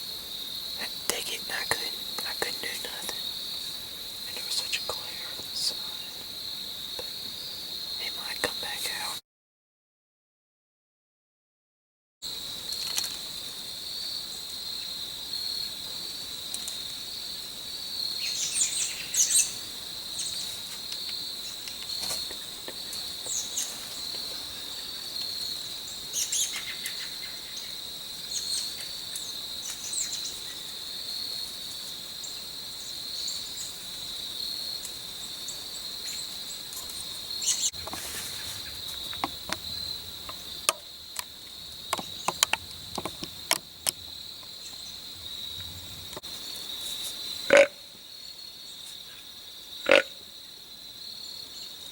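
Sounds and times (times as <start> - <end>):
crickets trilling: 0.0 - 9.2, 12.2 - 51.9
bird chirps: 36.1 - 40.7.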